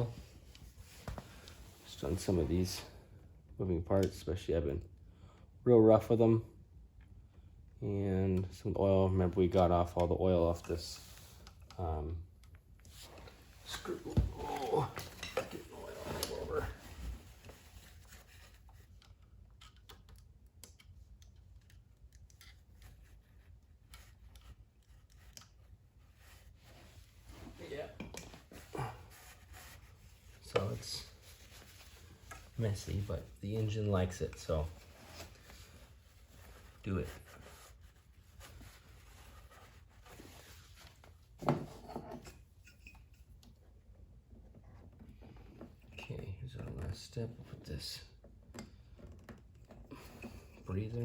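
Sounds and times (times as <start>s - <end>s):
faint clicks and scratches: 9.5s - 51.0s
tools and parts rubbing and clicking: 12.9s - 25.6s, 41.6s - 43.4s.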